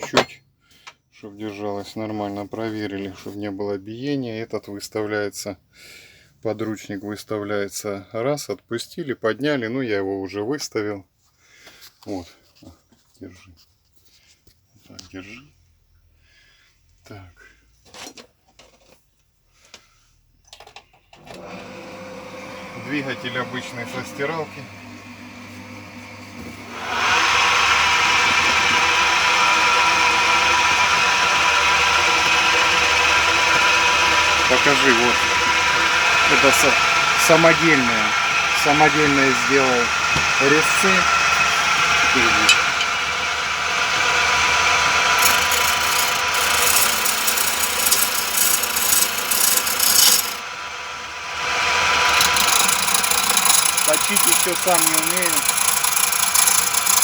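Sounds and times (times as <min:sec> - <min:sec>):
wood lathe motor humming: 0:21.4 - 0:25.5, 0:26.6 - 0:57.0
chisel scraping spinning wood: 0:45.2 - 0:50.4, 0:51.8 - 0:57.0.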